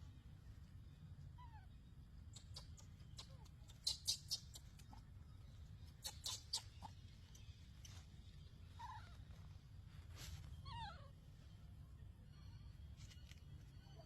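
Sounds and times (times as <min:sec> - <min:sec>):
baby monkey squeaky cries: 0:02.4 - 0:04.9, 0:06.0 - 0:07.0, 0:08.7 - 0:09.2.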